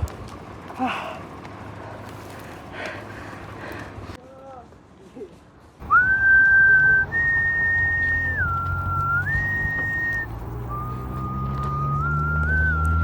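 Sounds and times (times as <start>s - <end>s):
person whistling a slow tune: 5.8s - 13.0s.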